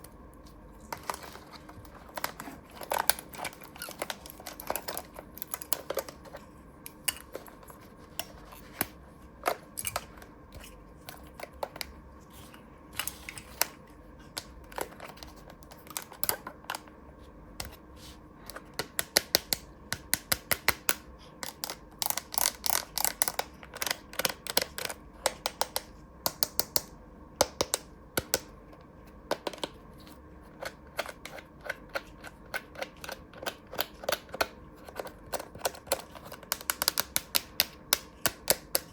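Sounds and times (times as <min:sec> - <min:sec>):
plastic toy pieces clicking: 0:32.5 - 0:38.9.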